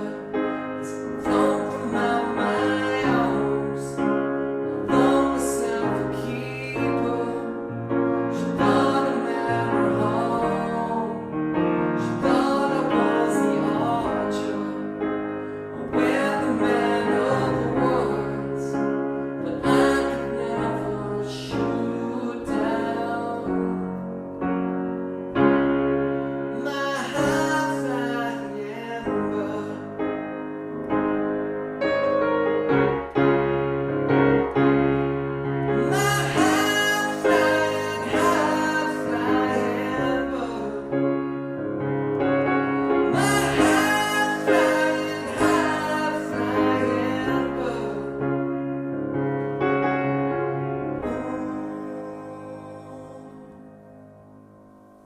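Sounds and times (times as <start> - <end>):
person singing: 0.0 - 18.8, 19.4 - 24.1, 26.5 - 30.0, 35.7 - 41.1, 43.0 - 48.3, 51.0 - 53.7
piano chords: 0.0 - 55.0.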